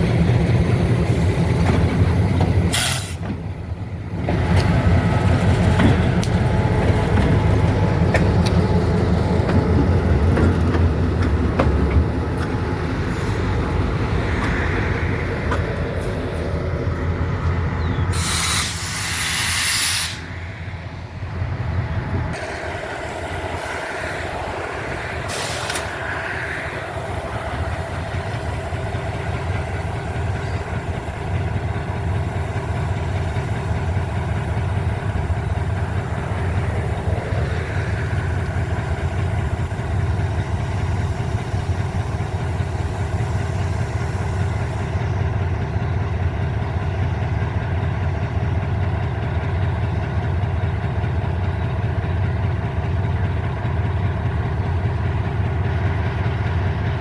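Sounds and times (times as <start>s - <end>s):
diesel locomotive humming: 0.0s - 57.0s
brake air hissing: 2.7s - 3.3s, 17.9s - 20.5s, 22.3s - 31.2s.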